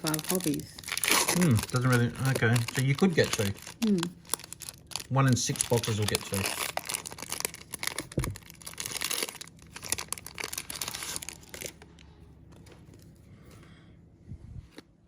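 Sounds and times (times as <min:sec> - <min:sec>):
wrapper tearing and crinkling: 0:00.0 - 0:12.0.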